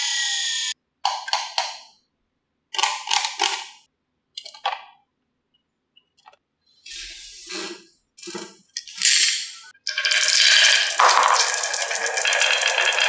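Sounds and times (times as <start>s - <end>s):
marbles clacking along track: 8.7s - 13.0s.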